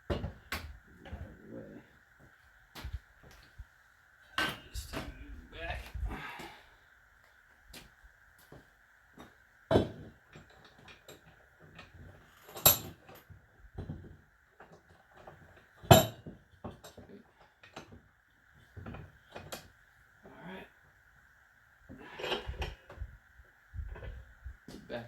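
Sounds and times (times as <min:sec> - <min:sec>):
faint high hum: 0:00.0 - 0:11.2
metal tools clinking and knocking: 0:09.8 - 0:14.0.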